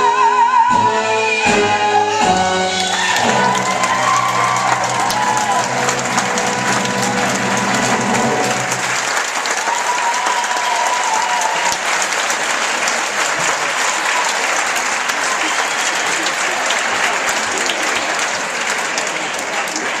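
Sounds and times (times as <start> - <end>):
orchestra held chord: 1.8 - 9.3
audience applauding: 2.2 - 20.0.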